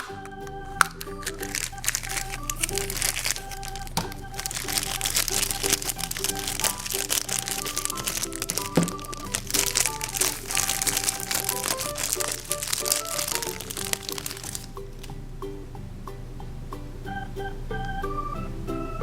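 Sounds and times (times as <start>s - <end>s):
wrapping crinkling and cracking: 0.0s - 15.1s
simple keyboard tune: 0.0s - 19.0s.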